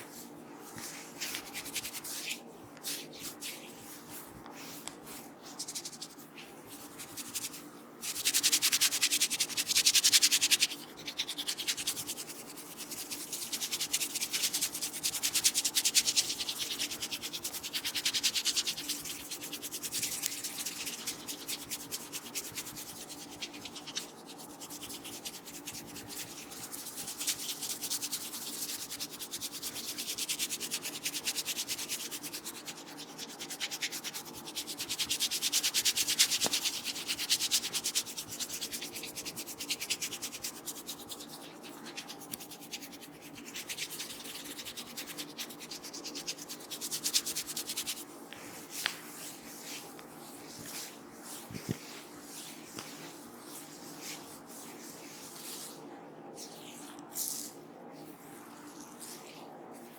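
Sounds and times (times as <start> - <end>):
hands rubbing hair on scalp: 0.1 - 55.8, 56.4 - 59.9.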